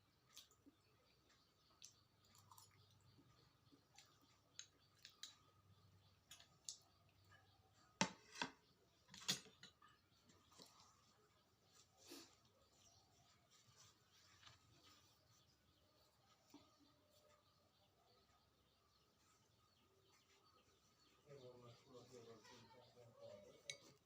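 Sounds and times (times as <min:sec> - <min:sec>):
mouth clicks and smacks chewing: 0:00.0 - 0:07.3.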